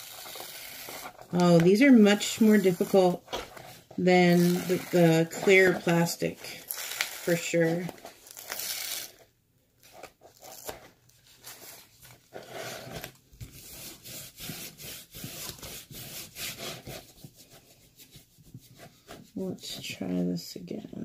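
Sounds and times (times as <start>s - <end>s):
hands rubbing packaging: 0.0s - 9.2s.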